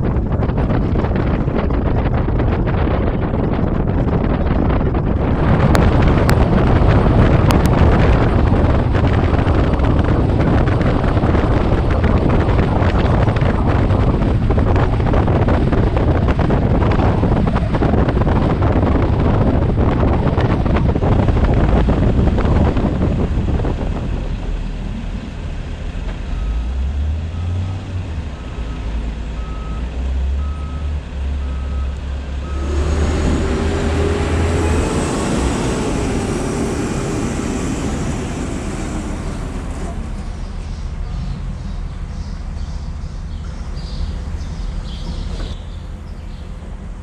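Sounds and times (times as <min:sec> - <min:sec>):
low engine hum: 0:00.0 - 0:47.0
wind and road noise: 0:00.0 - 0:47.0
reversing beeper: 0:26.3 - 0:34.9.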